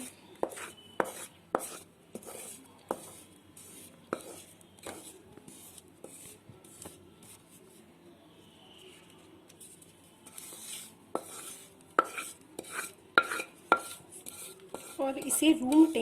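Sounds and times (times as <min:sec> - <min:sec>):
utensil scraping pan: 0:10.3 - 0:16.0.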